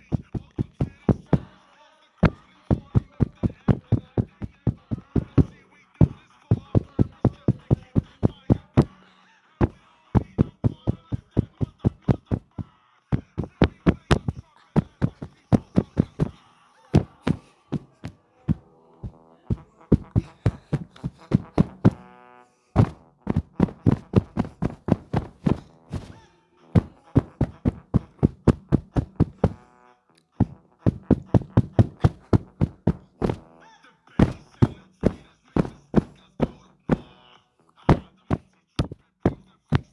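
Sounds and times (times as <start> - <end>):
hard knocks on a toy: 13.2 - 16.4, 19.5 - 22.0, 22.8 - 26.2, 30.4 - 33.4, 34.2 - 37.1, 37.9 - 39.9.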